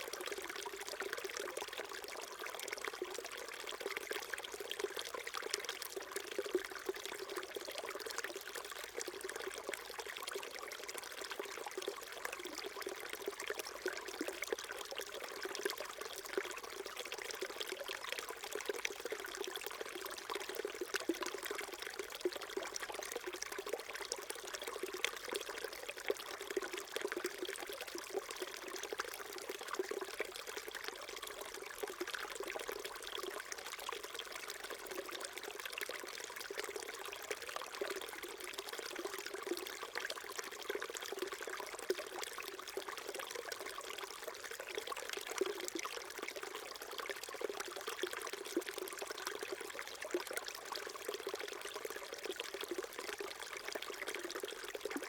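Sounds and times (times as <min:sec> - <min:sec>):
stream trickling over stones: 0:00.0 - 0:55.0.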